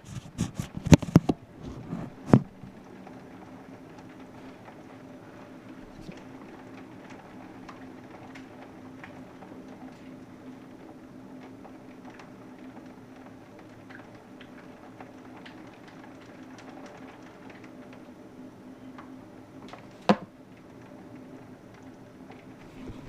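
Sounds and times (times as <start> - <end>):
steady low hum: 20.4 - 23.0.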